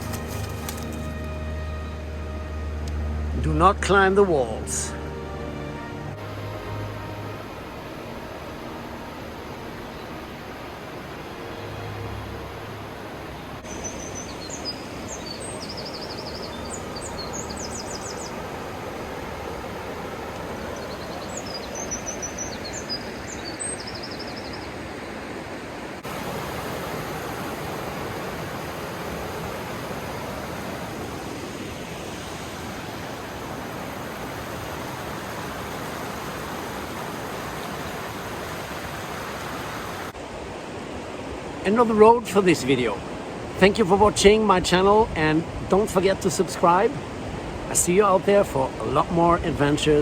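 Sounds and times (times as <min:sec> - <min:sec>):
rushing river water: 0:00.0 - 0:50.0
small bird chirping trills: 0:13.6 - 0:18.4, 0:20.7 - 0:24.8.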